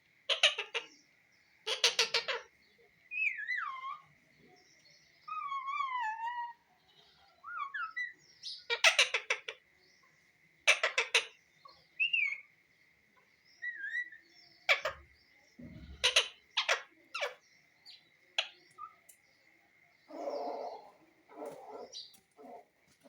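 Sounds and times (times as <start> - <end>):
parrot squawking harshly: 15.6 - 16.8.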